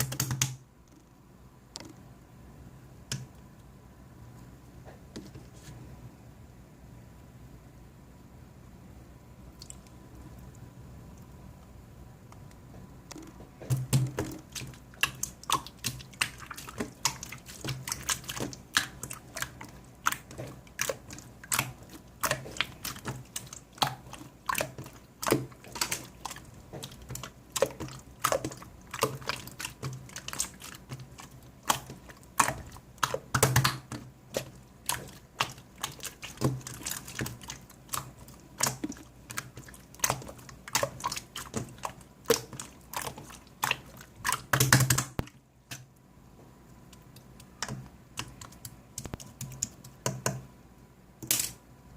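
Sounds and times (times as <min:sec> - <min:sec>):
slime clicking and popping: 0:26.8 - 0:34.0.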